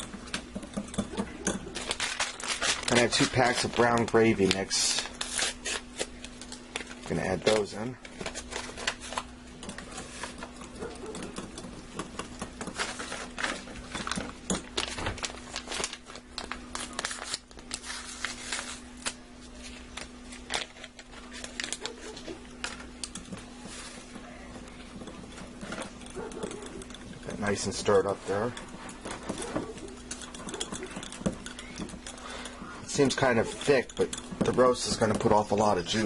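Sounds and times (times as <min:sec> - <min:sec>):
spoon stirring and scraping: 0:00.0 - 0:07.5, 0:08.1 - 0:14.8, 0:19.6 - 0:36.0
steady low hum: 0:00.0 - 0:36.0
paper packets crinkling and tearing: 0:01.7 - 0:09.4, 0:12.8 - 0:22.9.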